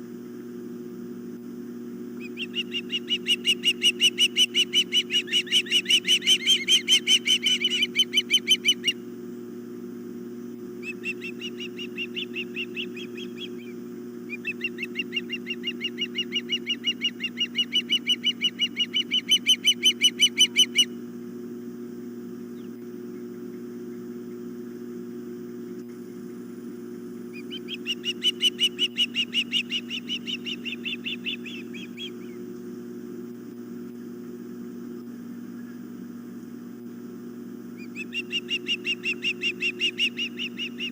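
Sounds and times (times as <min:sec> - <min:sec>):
steady low hum: 0:00.0 - 0:40.9
ospreys chirping: 0:02.2 - 0:09.0, 0:10.8 - 0:21.0, 0:27.3 - 0:32.4, 0:37.8 - 0:40.9.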